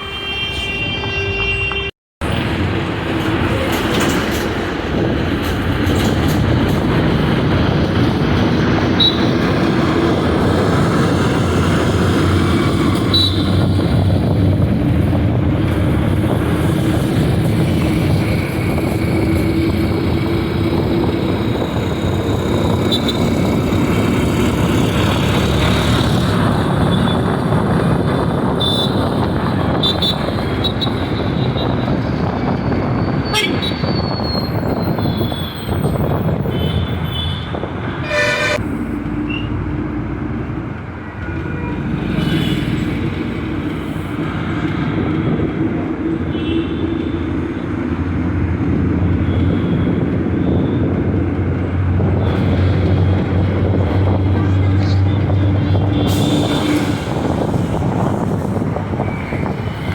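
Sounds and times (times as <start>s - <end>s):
vehicle horns honking: 0.0s - 1.9s, 13.1s - 13.8s, 28.6s - 31.8s, 33.2s - 34.0s, 36.5s - 38.6s
road traffic noise: 0.0s - 59.9s.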